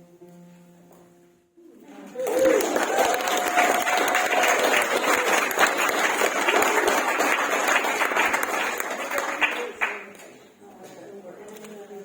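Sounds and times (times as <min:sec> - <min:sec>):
group of people applauding: 0:02.2 - 0:10.2.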